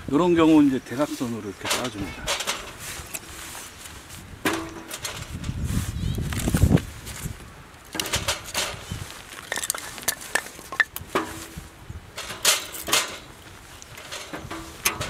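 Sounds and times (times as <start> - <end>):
wooden logs clunking: 1.0 - 15.0
logs hitting metal fire pit: 1.6 - 3.3, 4.3 - 5.6, 7.9 - 15.0.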